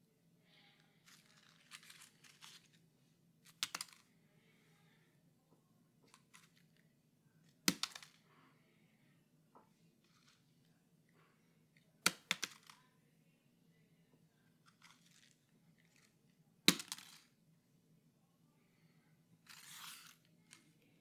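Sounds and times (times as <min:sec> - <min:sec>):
faint low hum: 0:00.0 - 0:21.0
paper rustling: 0:01.1 - 0:02.8, 0:19.5 - 0:20.3.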